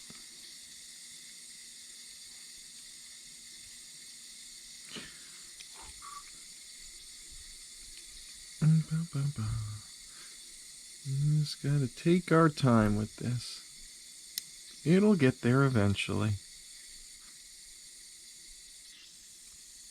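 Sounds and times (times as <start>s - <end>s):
background hiss: 0.0s - 19.9s
man's voice: 8.6s - 9.8s, 11.1s - 13.6s, 14.9s - 16.4s.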